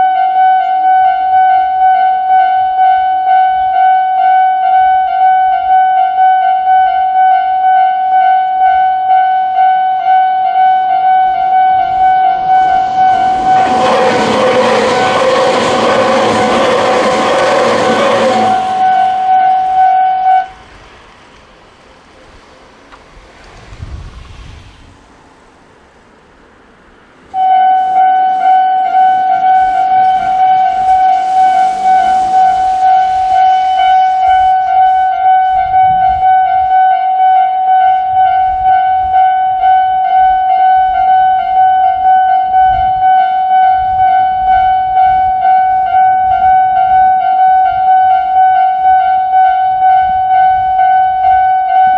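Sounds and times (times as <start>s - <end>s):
level crossing alarm ringing: 0.0s - 20.6s, 27.3s - 51.9s
train passing rumble: 10.8s - 51.9s.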